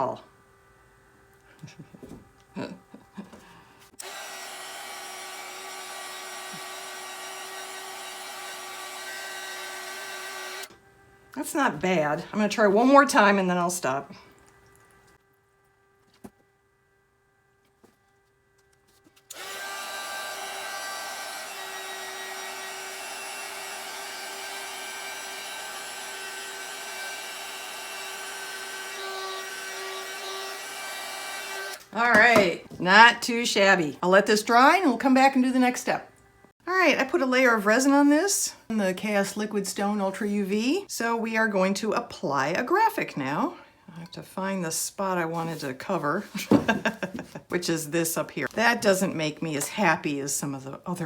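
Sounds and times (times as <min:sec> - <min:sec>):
electric tool whining: 0:01.7 - 0:10.9, 0:19.2 - 0:32.6
electric blower motor whirring: 0:02.5 - 0:13.1, 0:19.2 - 0:32.6.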